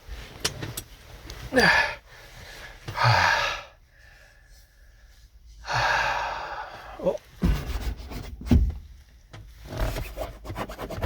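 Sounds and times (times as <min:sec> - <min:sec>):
man sighing: 0:01.5 - 0:02.0, 0:02.9 - 0:03.8, 0:05.6 - 0:07.3.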